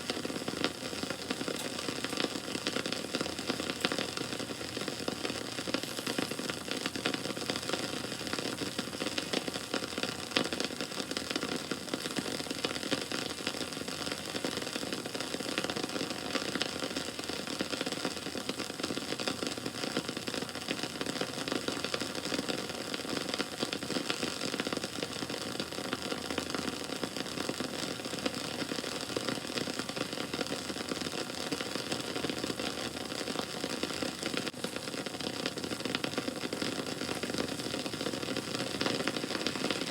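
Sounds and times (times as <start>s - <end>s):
flames hissing: 0.0s - 10.6s, 34.1s - 39.9s
bonfire crackling: 0.0s - 39.9s.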